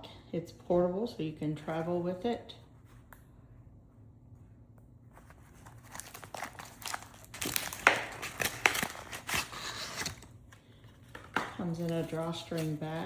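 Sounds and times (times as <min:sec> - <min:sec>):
bag crinkling and rustling: 0:05.2 - 0:10.4.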